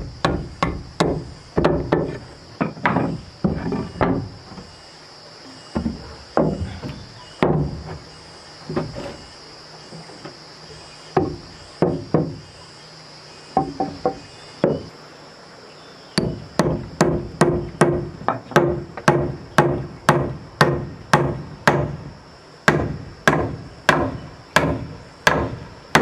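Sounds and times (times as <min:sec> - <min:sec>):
high insect drone: 0:00.0 - 0:26.0
hammer striking wood: 0:00.2 - 0:04.3, 0:07.4 - 0:07.8, 0:13.6 - 0:14.9, 0:16.2 - 0:22.0, 0:22.7 - 0:26.0.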